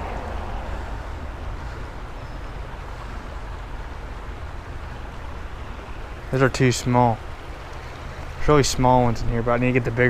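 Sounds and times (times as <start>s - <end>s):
wind rumble on microphone: 0.0s - 6.4s
creek water flowing: 0.0s - 10.0s.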